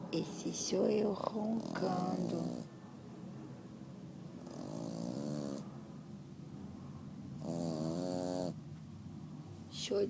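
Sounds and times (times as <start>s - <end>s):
dog snoring: 1.4s - 2.7s, 4.4s - 5.7s, 7.4s - 8.6s.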